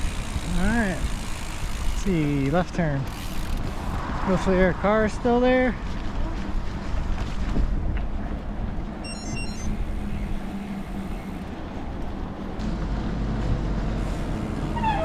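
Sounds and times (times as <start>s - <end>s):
bicycle road rumble: 0.0s - 15.0s
wind on microphone: 3.1s - 12.6s.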